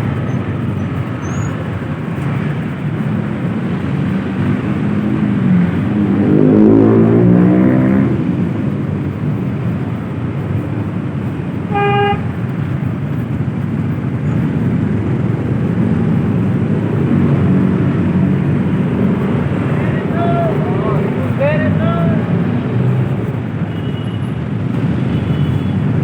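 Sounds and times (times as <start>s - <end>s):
vehicle road and engine noise: 0.0s - 26.0s
car horn beep: 11.7s - 12.3s, 23.7s - 25.8s.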